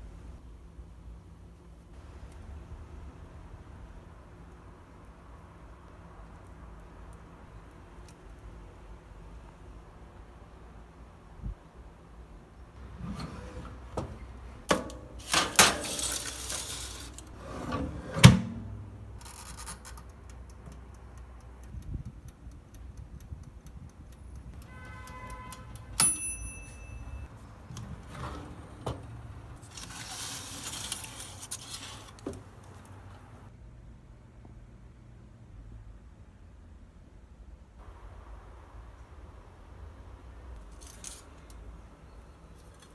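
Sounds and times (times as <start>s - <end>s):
utensils and dishes clicking and scraping: 14.7s - 17.8s, 26.6s - 33.3s
bright metallic ding: 26.0s - 27.3s.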